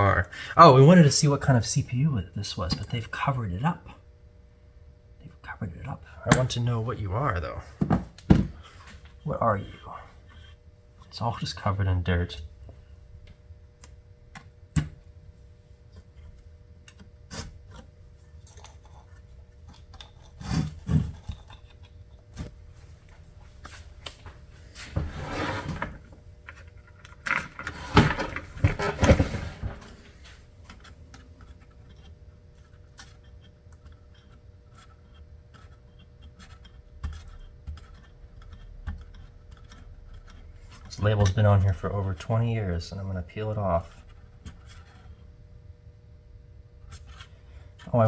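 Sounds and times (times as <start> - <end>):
rubbing and scraping on circuit board: 18.6 - 22.1, 24.8 - 41.9, 42.8 - 45.3, 46.8 - 48.0.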